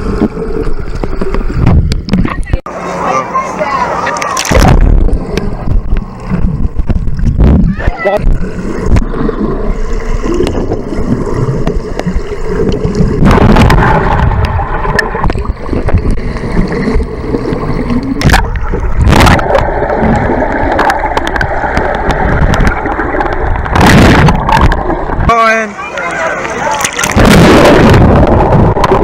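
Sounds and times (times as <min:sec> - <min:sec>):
rushing churning water: 0:07.0 - 0:29.0.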